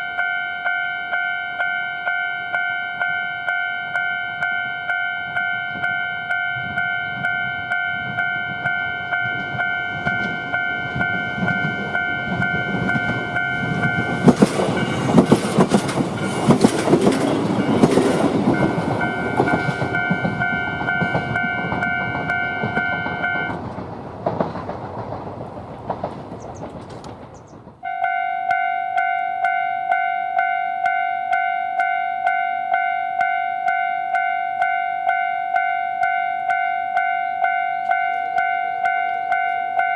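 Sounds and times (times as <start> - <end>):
level crossing warning bell: 0.0 - 23.6, 27.8 - 39.9
train wheels clacking: 5.3 - 27.9.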